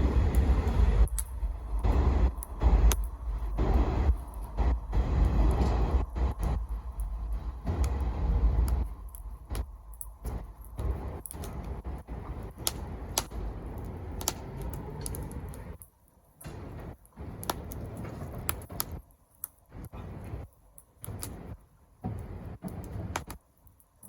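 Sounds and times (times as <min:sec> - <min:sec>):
low rumble: 0:00.0 - 0:15.8
wood fire crackling and popping: 0:00.0 - 0:24.0.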